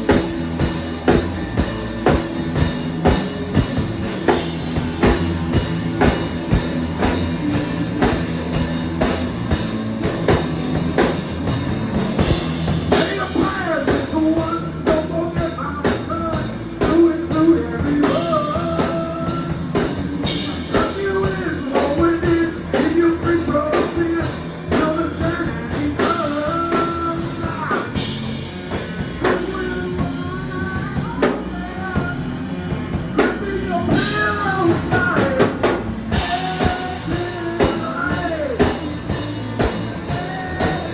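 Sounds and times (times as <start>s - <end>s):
rock music with drums and guitar: 0.0s - 40.9s
person singing: 5.5s - 9.2s, 12.2s - 40.9s.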